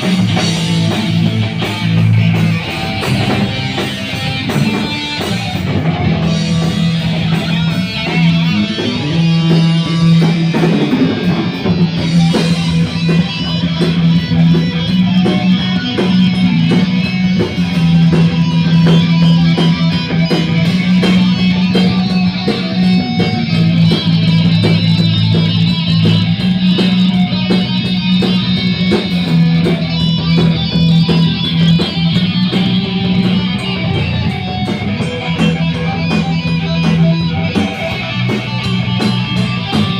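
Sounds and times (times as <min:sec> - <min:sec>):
instrumental rock music: 0:00.0 - 0:39.9.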